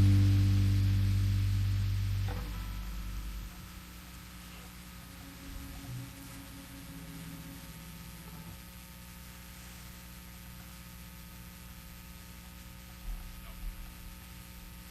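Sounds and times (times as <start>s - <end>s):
soft low thumps: 0.0s - 8.8s
low held note: 0.0s - 9.0s
sound system hiss and hum: 0.0s - 14.9s.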